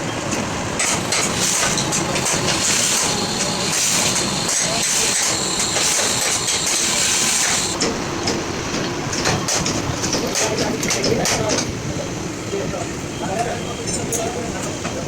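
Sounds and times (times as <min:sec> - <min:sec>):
heavy truck engine running: 0:00.4 - 0:08.1
loud steady hiss: 0:00.6 - 0:08.1.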